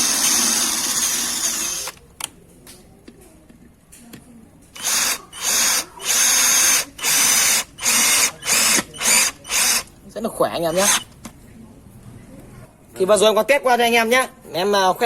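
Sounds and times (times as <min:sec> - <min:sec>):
cordless drill motor whine: 0:00.0 - 0:02.0, 0:04.8 - 0:09.8, 0:10.8 - 0:11.0.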